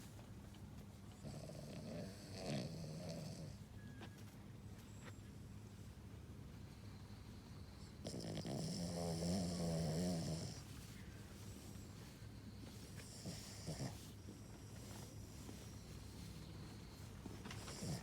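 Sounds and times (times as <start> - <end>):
dog snoring: 1.1 - 3.6, 6.8 - 10.8, 12.4 - 18.0.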